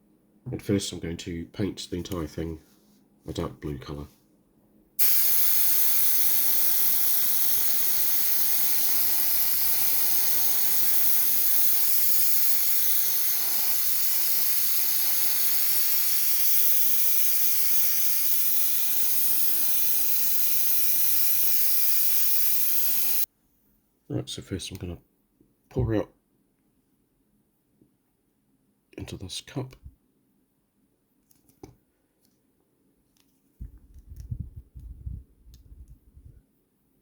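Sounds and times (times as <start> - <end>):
spray paint hissing: 5.0 - 23.3.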